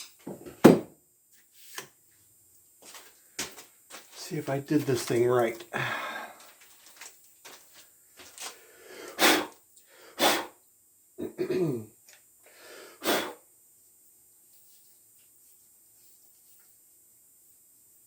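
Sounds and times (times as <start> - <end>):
man clearing throat and coughing: 11.2 - 12.0.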